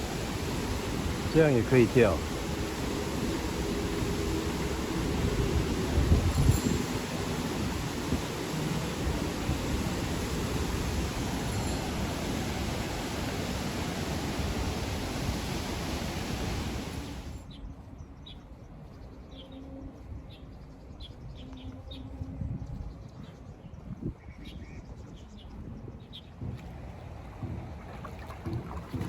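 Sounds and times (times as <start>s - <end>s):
loud steady rushing noise: 0.0s - 17.5s
quiet outdoor background: 0.0s - 29.0s.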